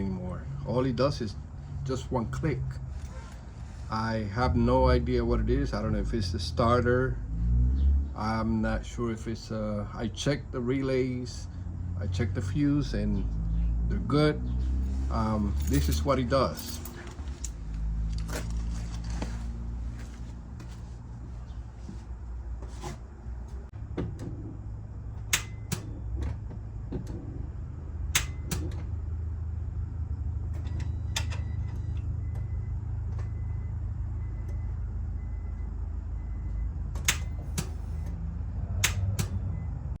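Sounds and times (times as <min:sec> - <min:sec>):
faint repeating beep: 0:39.3 - 0:40.0.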